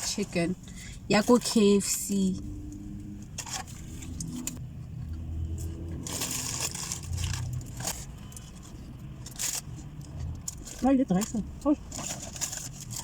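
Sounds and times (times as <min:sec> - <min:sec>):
food packaging rustling: 0:06.0 - 0:13.0.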